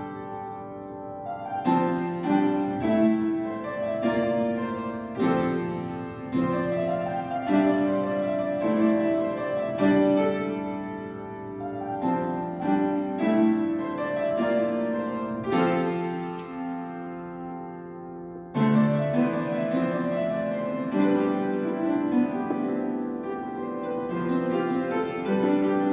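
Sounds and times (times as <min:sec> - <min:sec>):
slow piano melody: 0:00.0 - 0:25.9.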